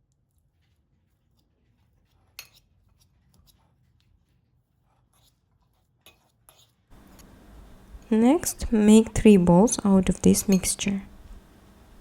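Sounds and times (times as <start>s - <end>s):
utensil tapping against a bowl: 8.4s - 11.4s.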